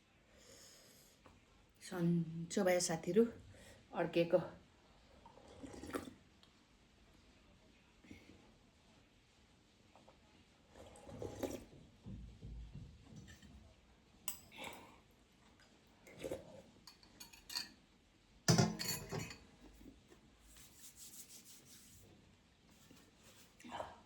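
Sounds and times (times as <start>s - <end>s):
cutlery clinking on dishes: 14.3s - 14.8s, 16.9s - 17.8s, 18.5s - 19.6s.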